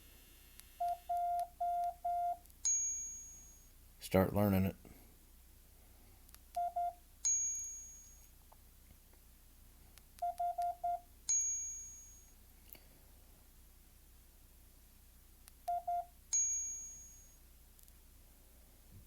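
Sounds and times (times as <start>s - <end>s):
short morse code beeps: 0.8s - 2.4s, 6.6s - 7.0s, 10.2s - 11.0s, 15.7s - 16.1s
bright ringing ding: 2.6s - 3.7s, 7.3s - 8.3s, 11.3s - 12.4s, 16.3s - 17.4s.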